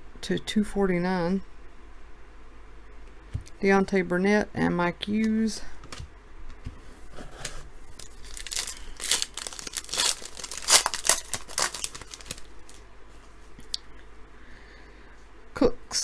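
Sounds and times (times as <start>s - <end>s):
wrapper tearing and crumpling: 7.4s - 12.8s.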